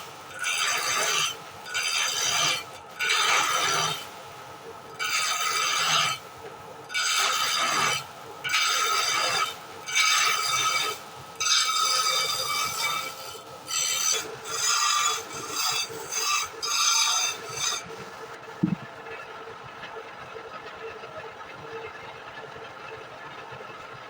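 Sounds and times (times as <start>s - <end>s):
faint motor hum: 0.0s - 24.0s
tool cutting wood on a lathe: 0.4s - 4.1s, 5.0s - 6.2s, 6.9s - 18.8s.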